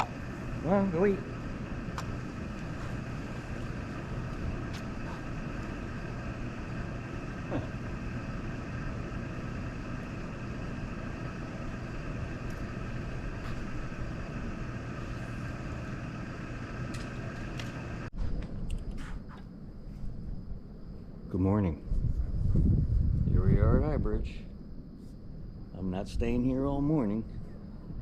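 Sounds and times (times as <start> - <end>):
engine drone: 0.0 - 18.9.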